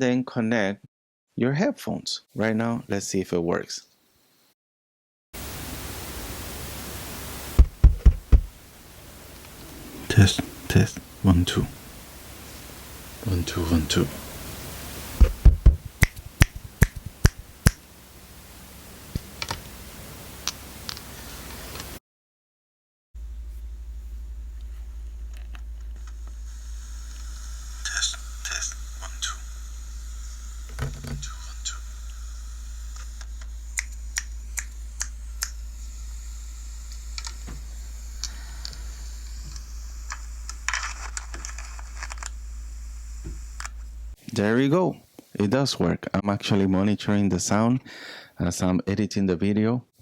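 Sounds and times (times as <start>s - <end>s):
steady low hum: 5.4s - 22.0s, 23.2s - 45.6s
sharp clicks: 15.2s - 17.8s, 32.8s - 35.6s, 36.9s - 42.4s
finger snaps: 15.8s - 17.8s.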